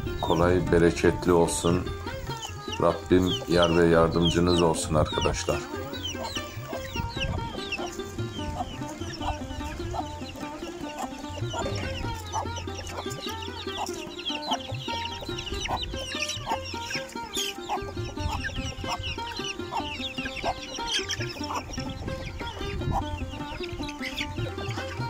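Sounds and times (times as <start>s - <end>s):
background music: 0.0s - 25.0s
chickens clucking: 0.0s - 25.0s.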